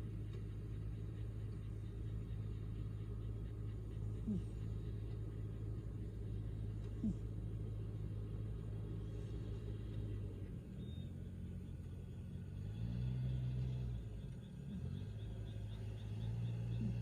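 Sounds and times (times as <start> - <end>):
cat rumbling breathing: 0.6 - 10.5.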